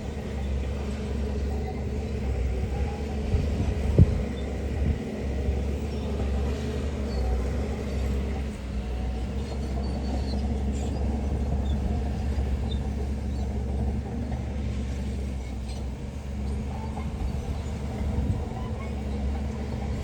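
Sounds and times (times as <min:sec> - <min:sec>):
heavy diesel engine rumbling: 0:00.0 - 0:20.0.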